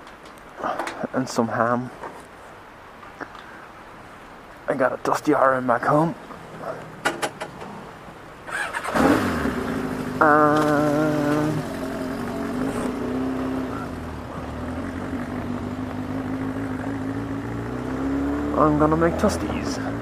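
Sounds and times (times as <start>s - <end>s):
motorcycle engine starting and running: 8.4s - 20.0s.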